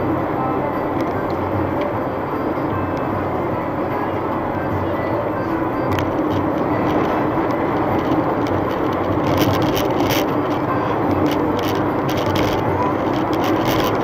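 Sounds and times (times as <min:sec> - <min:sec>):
road and engine noise in vehicle: 0:00.0 - 0:14.0
light rattles: 0:05.8 - 0:14.0.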